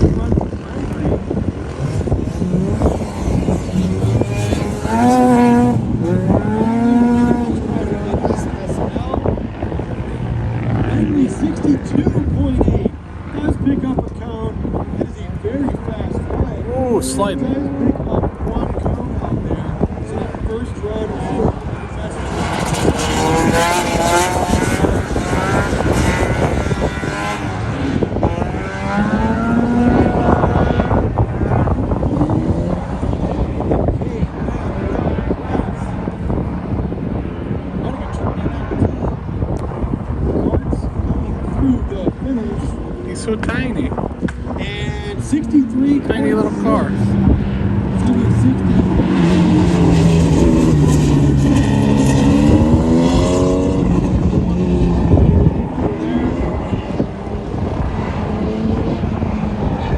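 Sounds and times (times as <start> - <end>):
two-stroke engine at high revs: 0.0 - 12.5, 16.7 - 18.2, 19.6 - 40.3, 42.2 - 59.9.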